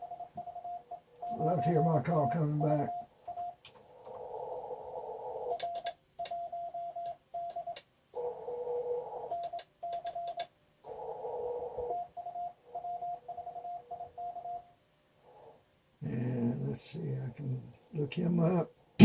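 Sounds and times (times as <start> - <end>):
morse code beeps: 0.0 - 3.6, 5.5 - 7.8, 9.3 - 10.5, 11.9 - 14.7
radio band hiss: 1.3 - 2.9.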